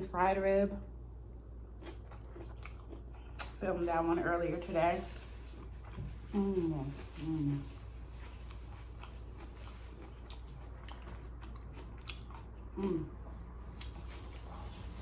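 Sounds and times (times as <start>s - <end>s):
chewing soft food: 1.2s - 3.6s, 5.1s - 15.0s
person humming mm: 6.3s - 7.7s, 12.8s - 13.2s.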